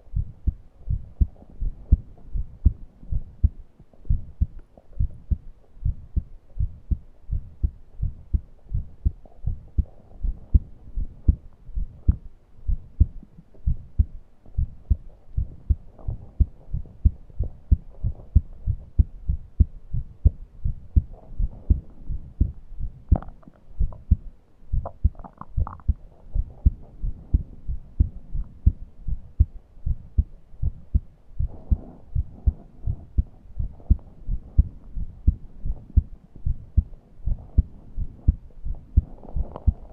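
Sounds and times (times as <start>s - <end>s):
heartbeat: 0.0s - 39.9s
faint breathing: 31.4s - 35.6s.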